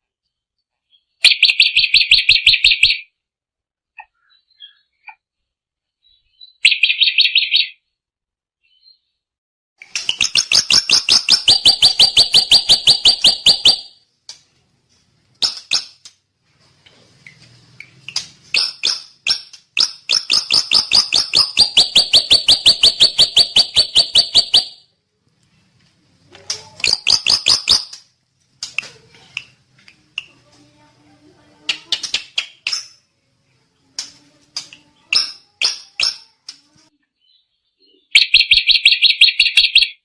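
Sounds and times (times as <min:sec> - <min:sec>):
bird singing rapid trills: 0:10.2 - 0:13.9, 0:19.8 - 0:24.8, 0:26.8 - 0:27.9.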